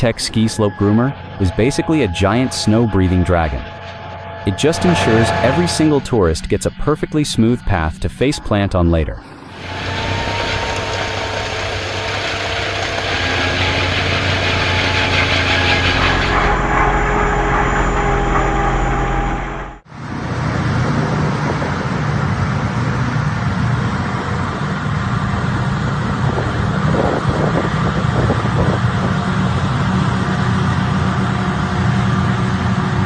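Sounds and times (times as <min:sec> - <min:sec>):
deep rough machine engine: 0:00.0 - 0:33.0
heavy machinery engines running: 0:00.0 - 0:33.0.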